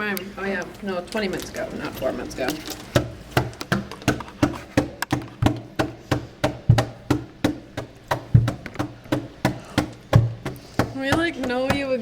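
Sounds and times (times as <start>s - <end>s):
knuckles knocking on wooden door: 4.8s - 12.0s.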